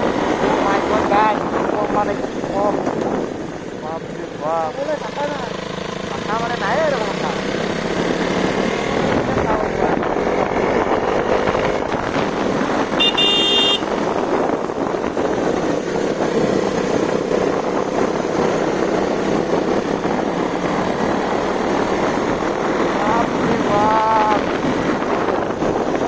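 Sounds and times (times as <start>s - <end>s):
motorcycle engine and wind: 0.0s - 26.0s
horn beep: 13.0s - 14.0s.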